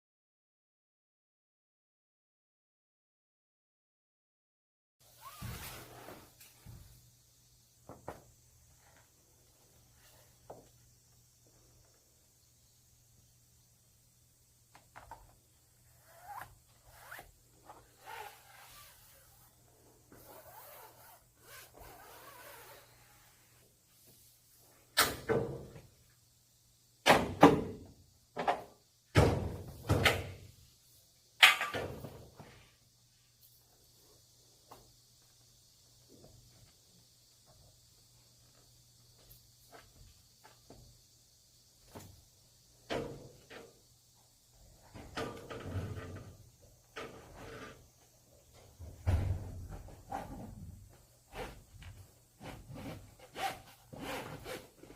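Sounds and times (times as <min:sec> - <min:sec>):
rustling and scraping: 0:05.1 - 0:07.0, 0:44.8 - 0:54.9.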